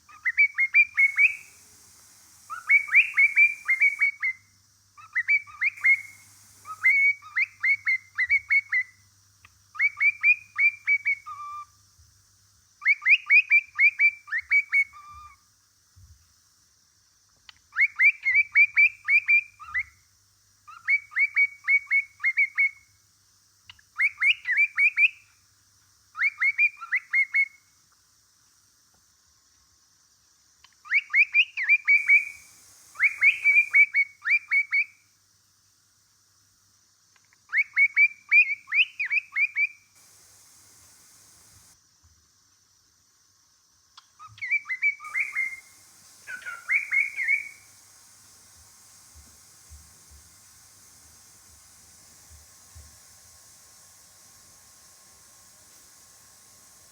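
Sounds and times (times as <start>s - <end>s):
cockatiel chirping song: 0.1s - 4.4s, 31.0s - 34.8s, 44.5s - 54.1s.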